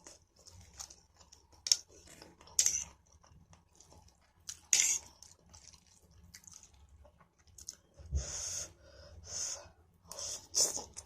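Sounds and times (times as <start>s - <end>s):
person chewing: 0.0s - 7.9s, 10.1s - 11.0s.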